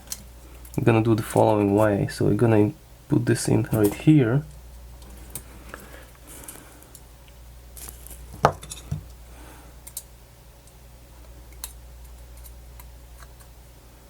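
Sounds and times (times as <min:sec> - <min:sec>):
low steady hum: 0:00.0 - 0:14.0
small parts clicking and tapping: 0:09.8 - 0:10.8.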